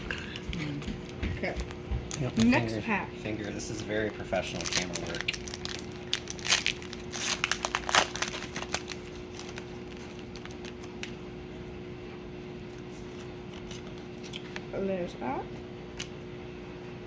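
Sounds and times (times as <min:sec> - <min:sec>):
faint steady hum: 0:00.0 - 0:17.0
foil wrapper tearing and crinkling: 0:04.3 - 0:11.3, 0:12.7 - 0:14.6.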